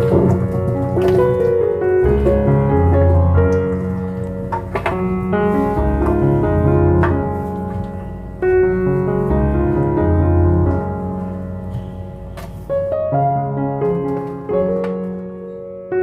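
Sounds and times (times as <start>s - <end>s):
calm slow piano music: 0.0s - 16.0s.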